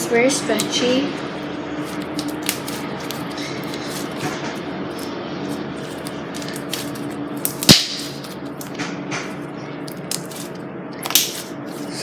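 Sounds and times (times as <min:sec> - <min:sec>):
sharp snap of slime: 0:07.4 - 0:08.7, 0:11.0 - 0:11.5.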